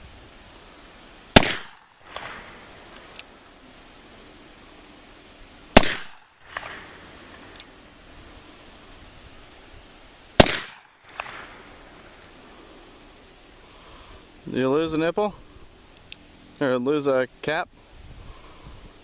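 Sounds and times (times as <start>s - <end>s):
revolver gunshots: 1.3s - 2.9s, 5.7s - 7.4s, 10.4s - 12.2s.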